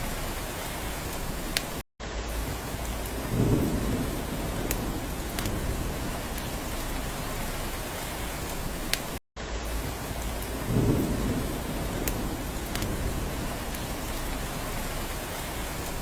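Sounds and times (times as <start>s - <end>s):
rain on a roof: 0.0s - 16.0s
thunder rumble: 2.3s - 8.9s, 9.7s - 16.0s
drip ticks: 4.6s - 5.6s, 12.0s - 13.0s.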